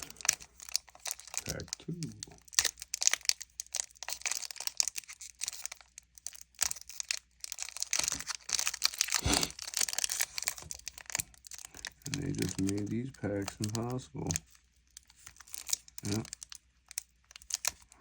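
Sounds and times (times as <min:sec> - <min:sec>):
foil wrapper crinkling and tearing: 0:00.0 - 0:18.0.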